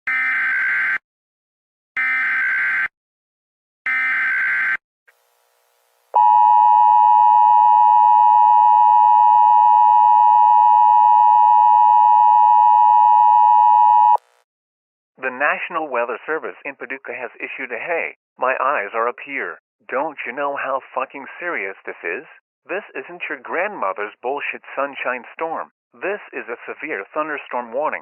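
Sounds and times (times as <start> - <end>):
two-tone attention signal: 6.2 - 14.2.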